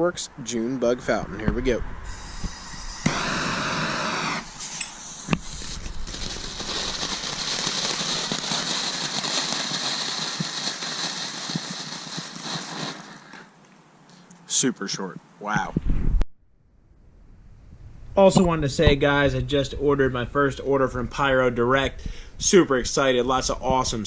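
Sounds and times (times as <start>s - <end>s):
fountain firework hissing: 2.0s - 13.5s
sharp snap: 2.4s - 5.4s.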